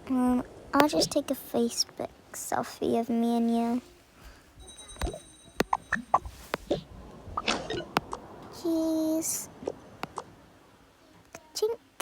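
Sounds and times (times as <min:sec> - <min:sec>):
faint high whine: 0:03.6 - 0:10.8
handling noise: 0:03.9 - 0:08.5
sharp clicks: 0:07.4 - 0:08.2.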